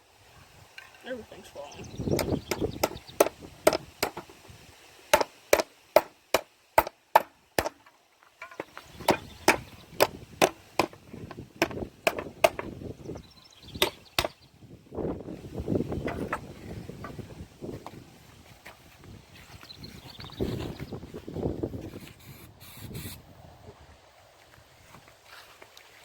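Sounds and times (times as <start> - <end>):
sharp knocks on wood: 2.2 - 4.4, 5.1 - 7.8, 8.6 - 11.0, 11.6 - 12.7.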